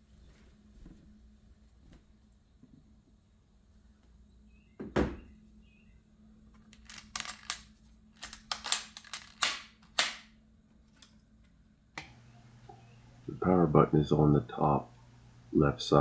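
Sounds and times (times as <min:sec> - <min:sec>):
sharp clicks and snaps: 0:06.7 - 0:10.3.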